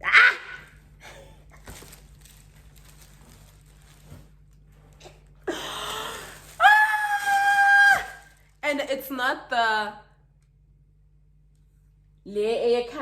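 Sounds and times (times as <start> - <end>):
packaging rustling and crinkling: 1.4 - 8.6.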